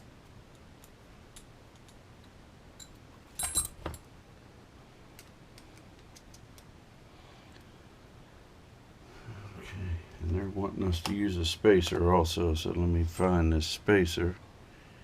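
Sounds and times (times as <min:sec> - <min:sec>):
small parts rattling: 0:02.8 - 0:04.1.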